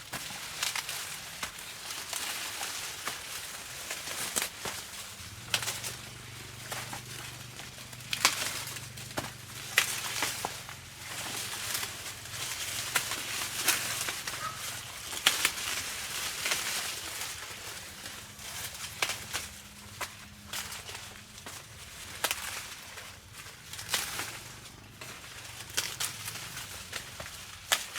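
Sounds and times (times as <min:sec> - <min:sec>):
dry corn leaves rustling: 0:00.0 - 0:27.9
sharp snaps of corn picking: 0:04.0 - 0:17.0, 0:25.7 - 0:27.9.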